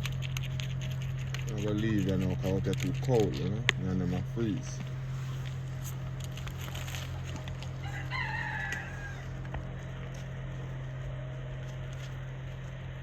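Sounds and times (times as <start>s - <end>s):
steady low hum: 0.0s - 13.0s
rooster crowing: 7.1s - 10.1s.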